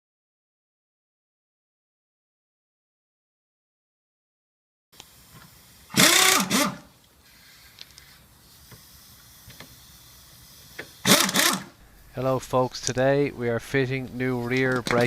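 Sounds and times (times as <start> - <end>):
handheld power tool whirring: 5.0 - 11.8.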